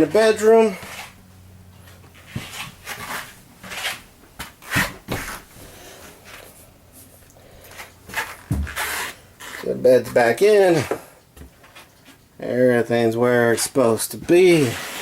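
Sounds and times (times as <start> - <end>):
footsteps on a floor: 7.7 - 9.1.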